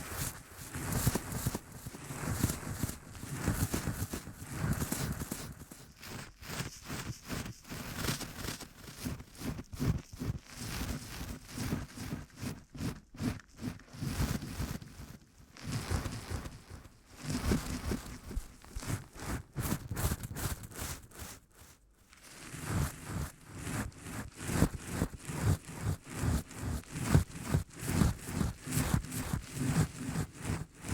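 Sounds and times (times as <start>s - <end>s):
rustling and crinkling: 15.6s - 21.3s.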